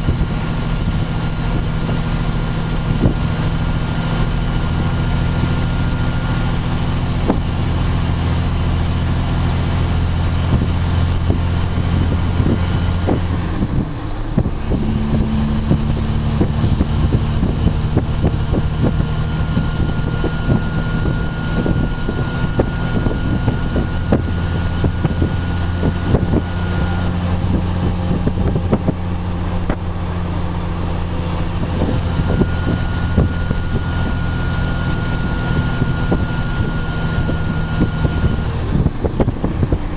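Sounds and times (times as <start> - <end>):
diesel truck engine pulling uphill: 0.0 - 39.9.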